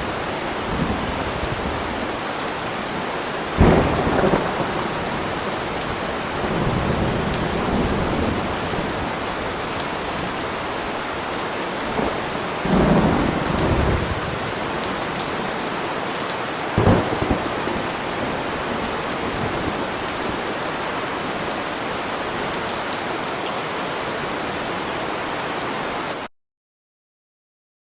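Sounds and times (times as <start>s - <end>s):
thunder rumbling: 0.0s - 2.3s, 3.6s - 10.8s, 11.9s - 15.5s, 16.8s - 20.5s
heavy rain: 0.0s - 26.3s
thunder crack: 3.6s - 8.9s, 16.8s - 19.9s.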